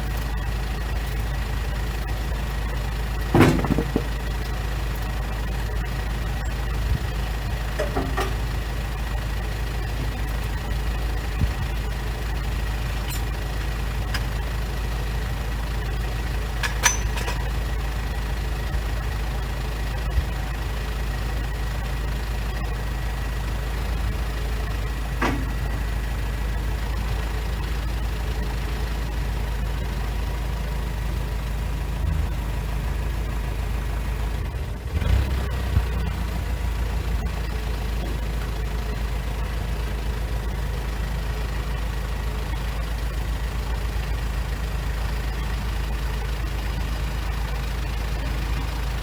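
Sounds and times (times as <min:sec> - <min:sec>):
engine running: 0:00.0 - 0:49.0.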